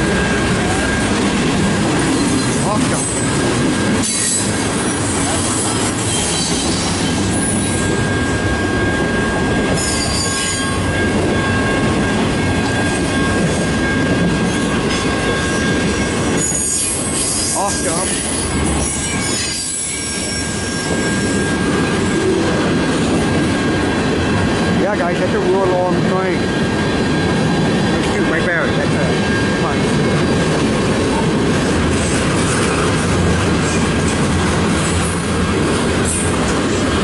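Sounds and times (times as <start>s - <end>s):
freight train cars rolling past: 0.0s - 37.0s
wheels squealing on rail: 0.0s - 37.0s.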